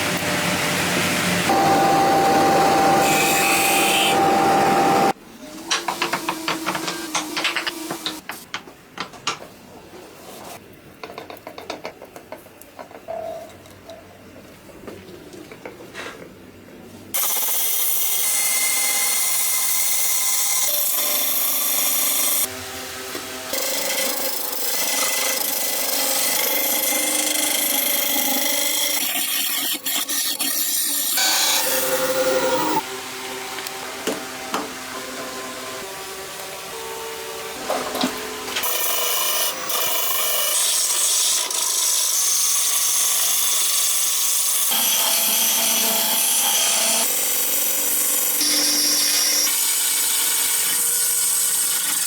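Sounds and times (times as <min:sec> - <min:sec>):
lathe tool cutting wood: 0:00.1 - 0:05.2, 0:30.2 - 0:37.2, 0:38.6 - 0:52.0
power tool whining: 0:01.2 - 0:05.2.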